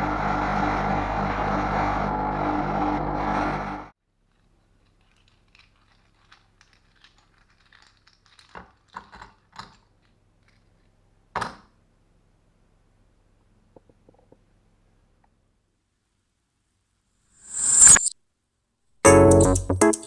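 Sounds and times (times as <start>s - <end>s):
music: 19.0s - 20.0s.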